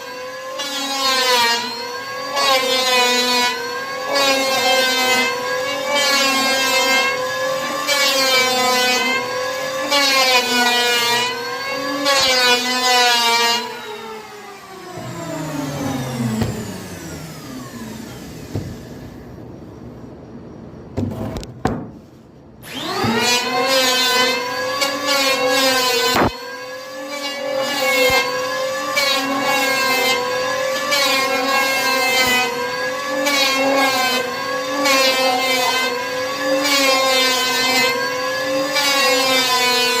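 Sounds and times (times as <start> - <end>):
power tool motor whining: 9.0 - 19.2, 22.6 - 37.0.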